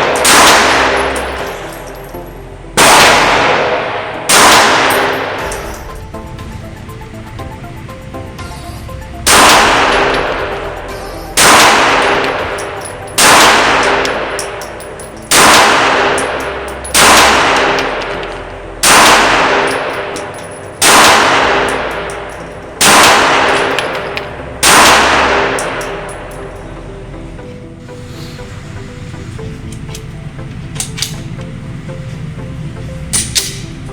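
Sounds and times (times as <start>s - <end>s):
pistol shots echoing: 0.0s - 6.0s, 9.2s - 26.4s.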